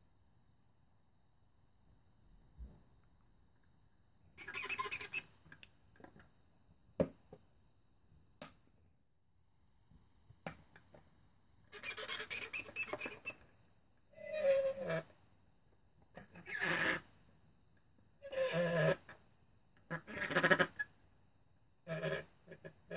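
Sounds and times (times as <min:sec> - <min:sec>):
straw squeaking in cup: 0:04.4 - 0:05.2, 0:11.8 - 0:13.4.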